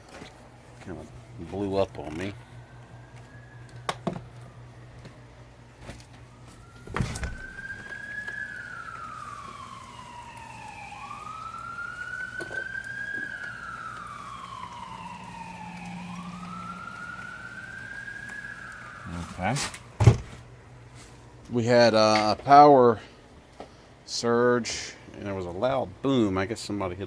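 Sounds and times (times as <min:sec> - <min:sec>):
emergency siren wailing: 0:00.1 - 0:20.0.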